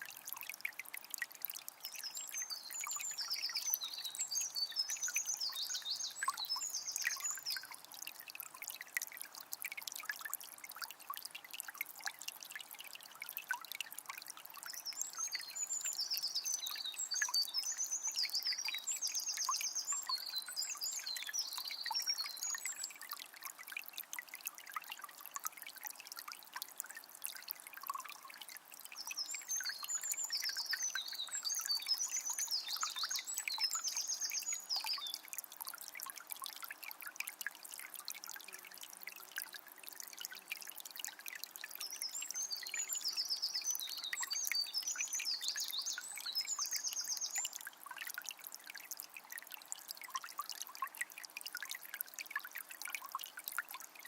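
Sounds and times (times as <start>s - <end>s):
spring water trickling: 0.0s - 54.0s
songbird singing: 1.9s - 7.8s, 14.6s - 23.2s, 28.9s - 35.3s, 41.8s - 47.6s.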